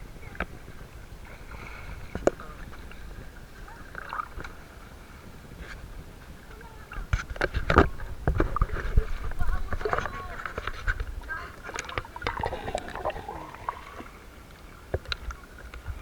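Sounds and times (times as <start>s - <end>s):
water splashing in a river: 7.6s - 16.0s.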